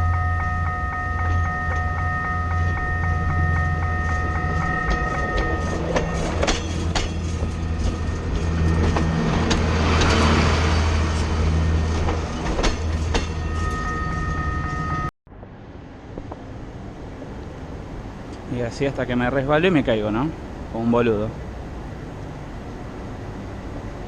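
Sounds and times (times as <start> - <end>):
wind: 0.0 - 24.0
bike rattling and clicking: 2.6 - 10.2.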